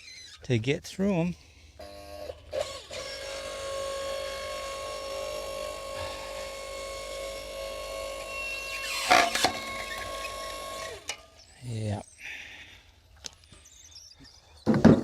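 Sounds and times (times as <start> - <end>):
log splitter motor humming: 1.8 - 11.3.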